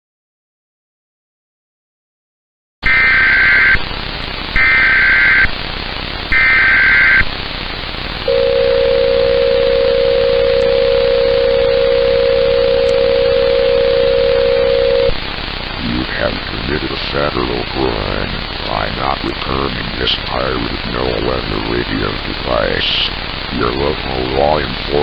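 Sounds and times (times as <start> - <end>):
radio hiss: 2.8 - 25.0
screeching data bursts: 2.9 - 3.8, 4.5 - 5.6, 6.3 - 7.3
single-tone attention signal: 8.3 - 15.1.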